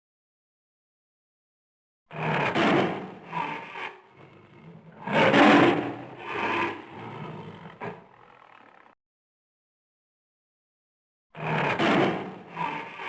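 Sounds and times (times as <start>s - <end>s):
lion roaring: 2.1s - 9.0s, 11.4s - 13.0s.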